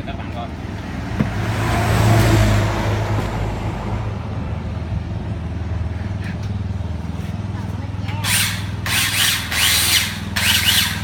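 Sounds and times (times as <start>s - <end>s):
electric chainsaw running: 8.2s - 11.0s.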